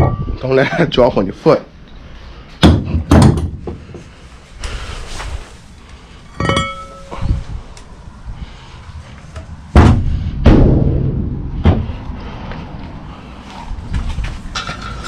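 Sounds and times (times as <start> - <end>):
heavy metal parts clunking: 6.3 - 7.4, 14.2 - 15.0.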